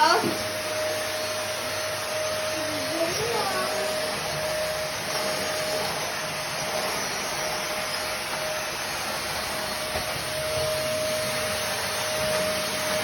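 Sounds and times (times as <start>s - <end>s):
vacuum cleaner running: 0.0s - 13.0s.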